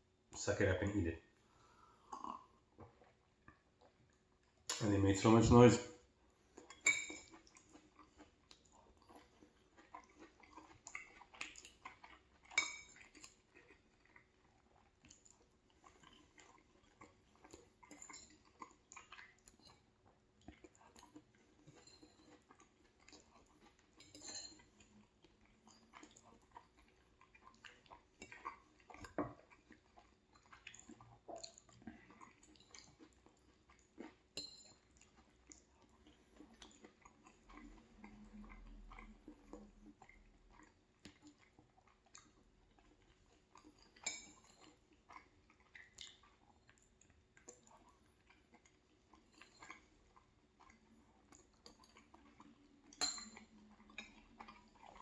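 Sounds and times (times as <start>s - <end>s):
chewing pasta: 1.3s - 5.4s, 6.0s - 55.0s
cutlery clinking on a dish: 6.7s - 7.3s, 24.0s - 24.7s, 34.4s - 34.8s, 53.0s - 53.4s.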